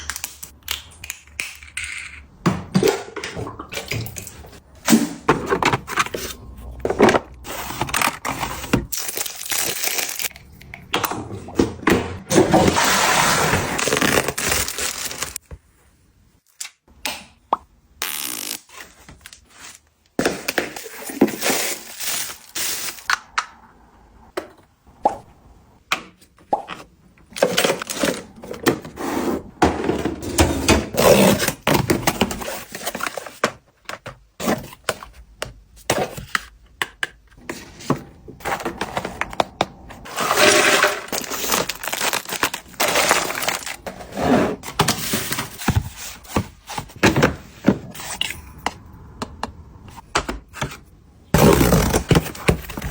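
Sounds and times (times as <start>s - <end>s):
packaging rustling and crinkling: 13.5s - 15.4s, 38.4s - 43.9s.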